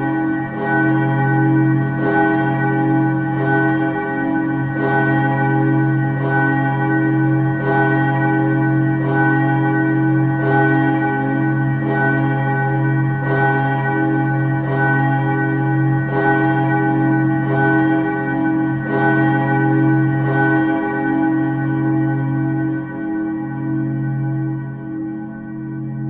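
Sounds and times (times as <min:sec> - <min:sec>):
church bell ringing: 0:00.0 - 0:26.0.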